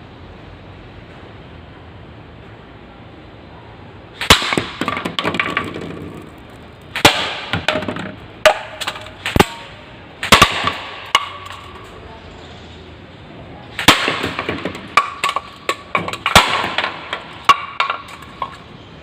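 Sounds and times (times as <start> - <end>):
airsoft rifle shots: 4.2 - 5.6, 6.9 - 7.8, 8.5 - 11.6, 13.8 - 15.6, 16.2 - 18.0.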